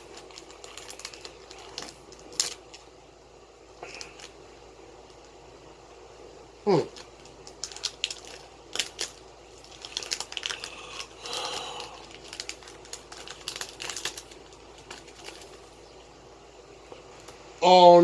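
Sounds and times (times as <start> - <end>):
foil pack crinkling and tearing: 0.0 - 2.9, 3.8 - 4.4, 6.8 - 16.0.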